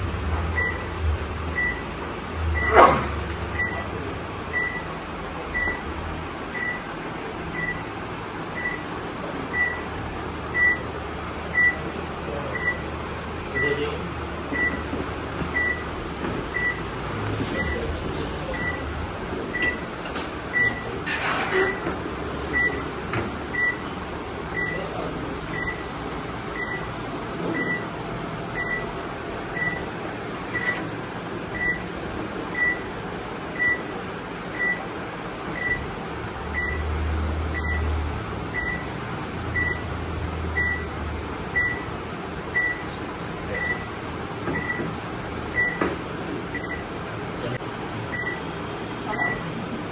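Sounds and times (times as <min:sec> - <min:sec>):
room noise: 0:00.0 - 0:49.9.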